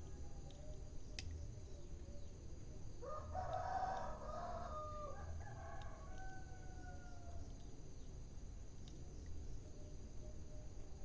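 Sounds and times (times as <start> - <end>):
rooster crowing: 3.0 - 7.3.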